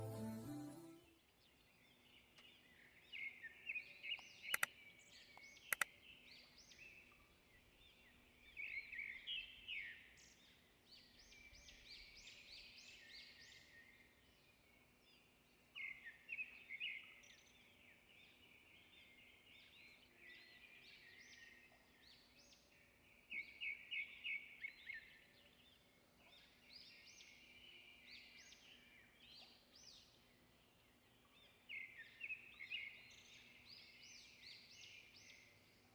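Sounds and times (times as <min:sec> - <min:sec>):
small birds singing: 0:00.0 - 0:35.9
sharp clicks: 0:04.2 - 0:04.7, 0:05.4 - 0:05.9.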